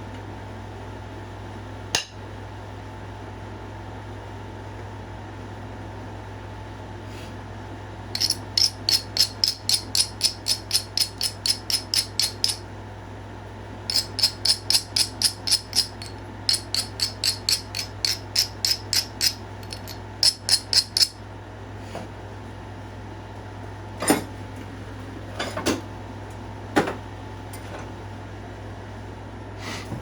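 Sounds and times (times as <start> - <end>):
stone scraping on stone: 8.2 - 12.6, 13.9 - 21.2.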